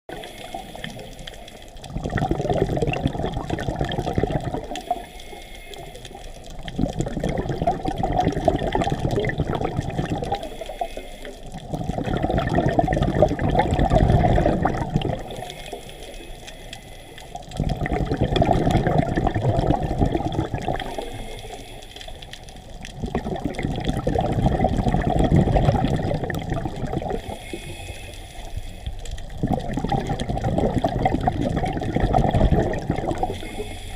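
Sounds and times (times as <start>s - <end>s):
regulator inhalation hiss: 0.1s - 1.5s, 4.8s - 6.4s, 10.4s - 11.5s, 15.2s - 17.4s, 20.8s - 22.4s, 27.2s - 29.1s, 33.2s - 33.9s
exhaled bubbles gurgling: 0.1s - 33.9s.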